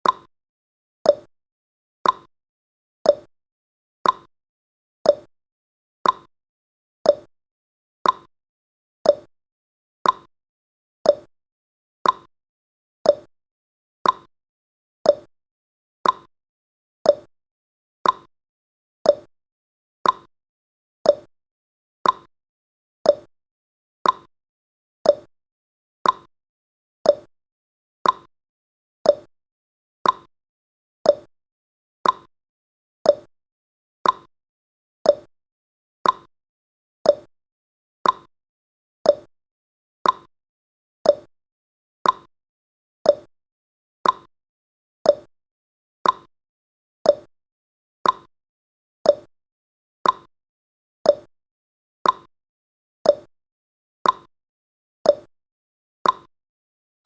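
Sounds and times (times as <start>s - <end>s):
clock ticking: 56.0s - 56.3s.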